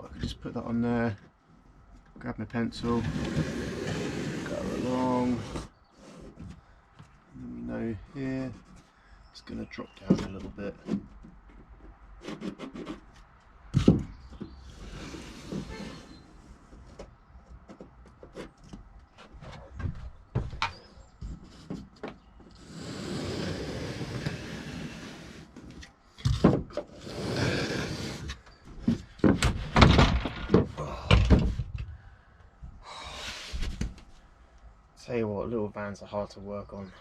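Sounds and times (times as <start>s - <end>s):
boards scraping: 2.7s - 6.6s, 9.5s - 17.1s, 21.2s - 31.8s
wooden boards knocking and clunking: 9.9s - 12.8s, 13.7s - 14.6s, 26.2s - 27.0s, 28.7s - 32.0s.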